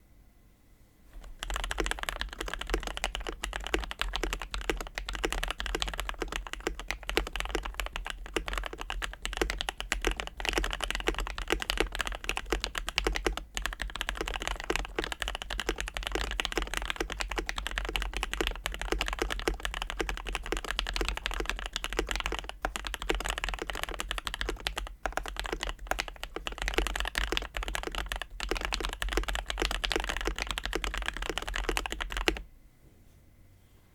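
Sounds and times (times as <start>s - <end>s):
steady low hum: 0.0s - 33.9s
fast mechanical keyboard typing: 1.2s - 32.4s.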